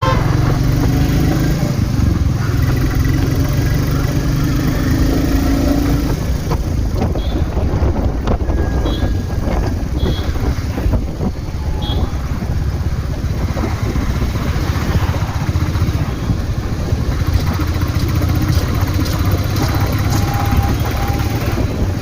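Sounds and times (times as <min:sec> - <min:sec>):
wind rushing over microphone: 0:03.3 - 0:22.0
motorcycle engine thumping: 0:06.0 - 0:14.3.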